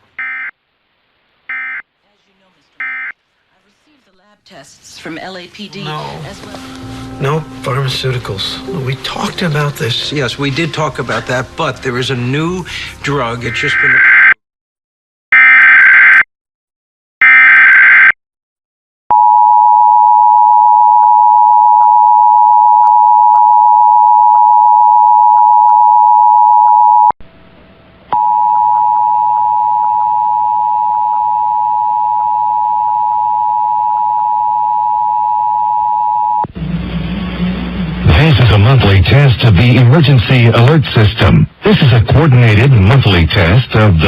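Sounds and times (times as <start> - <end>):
digital data screeches: 13.4 - 14.2
low hum: 27.2 - 44.0.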